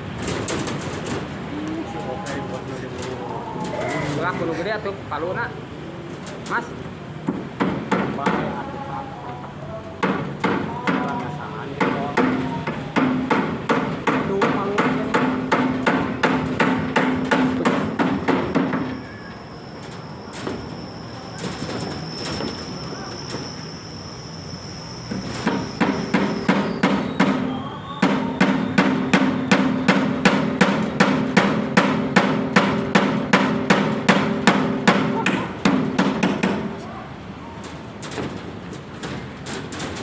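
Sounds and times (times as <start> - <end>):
hammer nailing wooden boards: 7.3 - 8.6, 10.0 - 19.0, 25.2 - 36.8.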